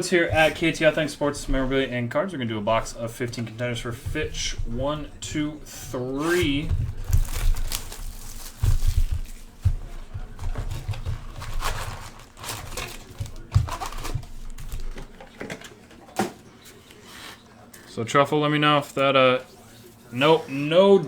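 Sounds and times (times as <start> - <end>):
hands handling things at a desk: 5.8 - 17.8.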